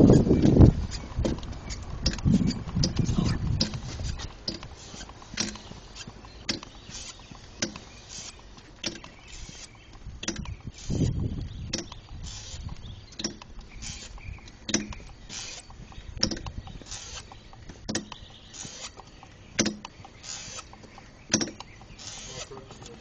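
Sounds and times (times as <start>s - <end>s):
car wheel creaking knock: 0.0s - 7.9s, 14.2s - 18.4s
short grinding hiss: 15.3s - 15.7s, 16.8s - 17.3s, 20.2s - 20.7s, 22.0s - 22.6s.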